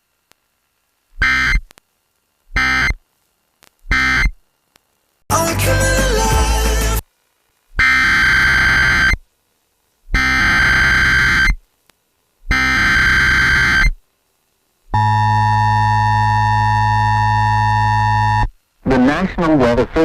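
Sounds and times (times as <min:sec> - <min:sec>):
screeching digital data bursts: 0:07.8 - 0:09.2, 0:10.2 - 0:11.6, 0:12.5 - 0:14.0.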